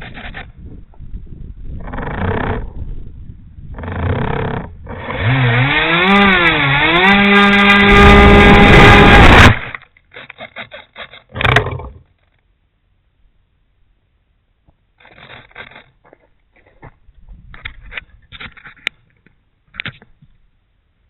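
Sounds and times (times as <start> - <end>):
wind buffeting on microphone: 0.0 - 5.0, 16.9 - 18.5
short stuttering pulses: 3.8 - 12.0
model plane motor whining: 7.2 - 9.8.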